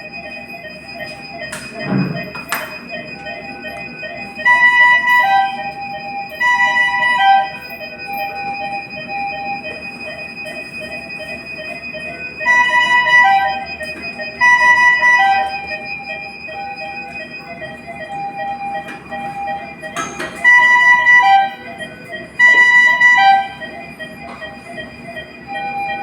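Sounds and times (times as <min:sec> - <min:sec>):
electronic alarm beeps: 0:00.0 - 0:26.0
steady high-pitched tone: 0:00.0 - 0:26.0.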